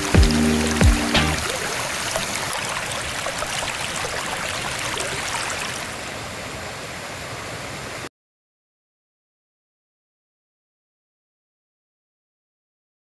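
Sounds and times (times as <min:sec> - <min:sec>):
stream flowing over rocks: 0:00.0 - 0:08.0.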